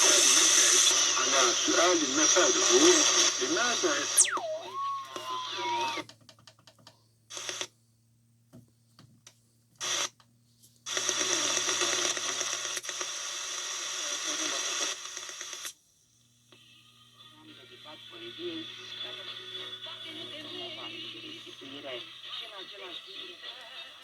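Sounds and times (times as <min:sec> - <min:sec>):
static hiss: 0:00.0 - 0:06.0, 0:09.8 - 0:10.2, 0:10.9 - 0:15.8
radio clicks: 0:02.2 - 0:07.7
gliding radio whistle: 0:02.6 - 0:06.0.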